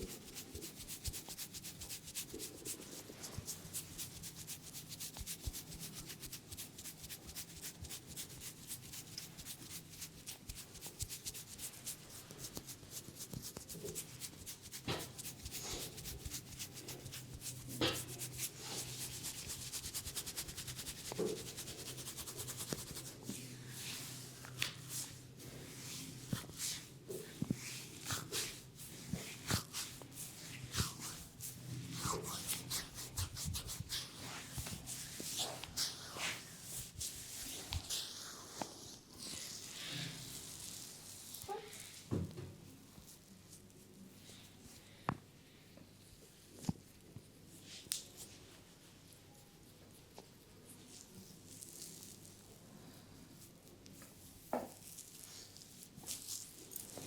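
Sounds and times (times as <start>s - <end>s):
hands rubbing hair and scalp: 0.0s - 41.4s, 53.9s - 57.0s.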